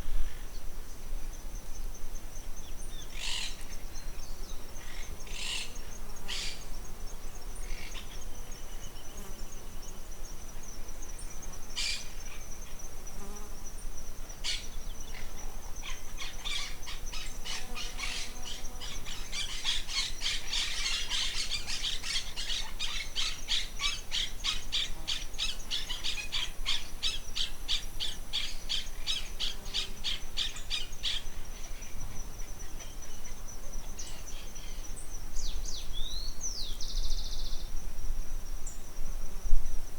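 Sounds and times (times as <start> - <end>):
high-pitched insect buzz: 11.4 - 37.7.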